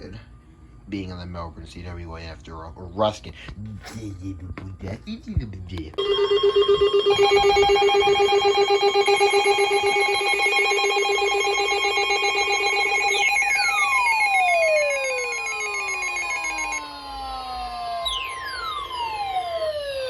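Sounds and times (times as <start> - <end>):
electronic alert beeping tones: 6.0 - 16.8
falling sweep tones: 7.1 - 20.0.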